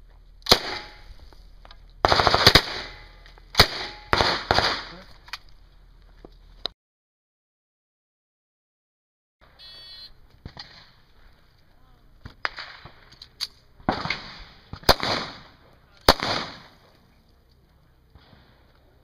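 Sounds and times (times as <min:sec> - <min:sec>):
gunshots with ringing echo: 0:00.5 - 0:01.1, 0:02.0 - 0:05.0, 0:13.9 - 0:16.8.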